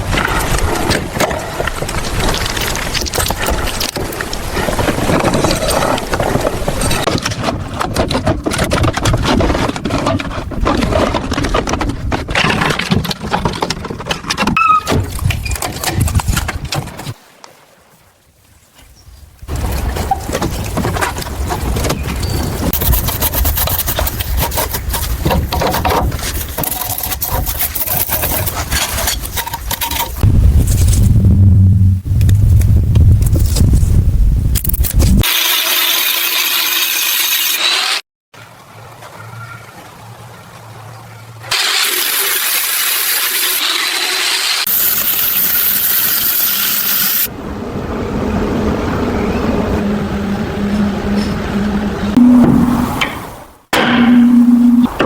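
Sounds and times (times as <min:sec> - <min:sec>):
hand tools scraping and knocking: 0:04.6 - 0:17.2, 0:19.6 - 0:30.2.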